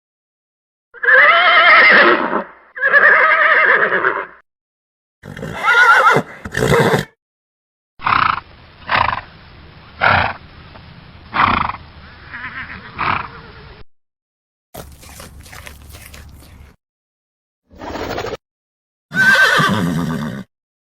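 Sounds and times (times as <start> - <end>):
horses neighing: 5.2 - 7.1, 14.8 - 16.8, 19.1 - 20.5.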